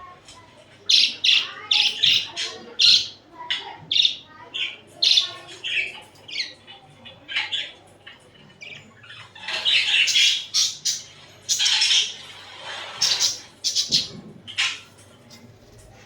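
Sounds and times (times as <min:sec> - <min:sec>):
budgerigars chirping: 0:00.9 - 0:07.8, 0:08.6 - 0:12.2, 0:12.8 - 0:14.9.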